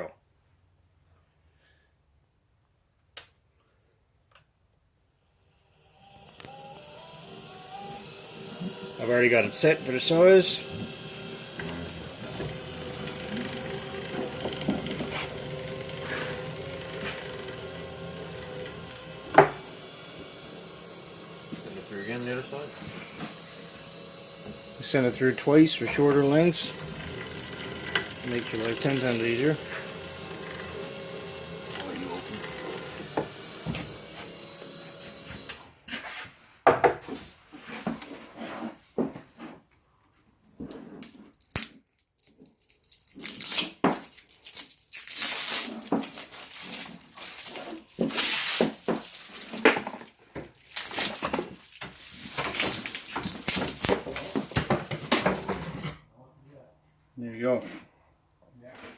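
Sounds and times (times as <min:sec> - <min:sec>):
electric motor running: 0:05.4 - 0:35.8
wire scraping and creaking in rollers: 0:11.6 - 0:19.4, 0:24.8 - 0:30.8.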